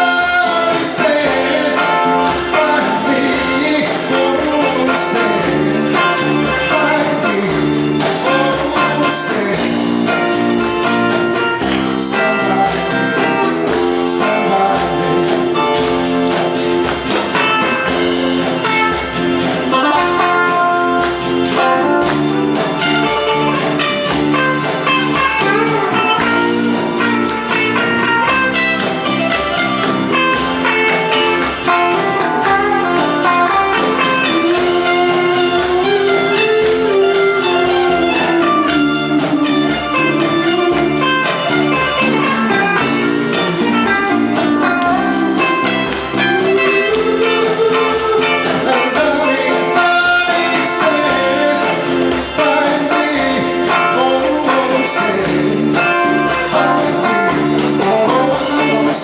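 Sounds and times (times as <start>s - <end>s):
guitar melody bending: 0.0s - 59.0s
live band playing: 0.0s - 59.0s.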